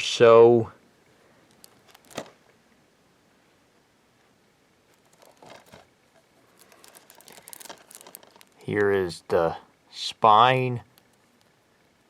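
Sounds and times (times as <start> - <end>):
plastic case rustling and clicking: 1.5 - 2.4, 4.9 - 8.6.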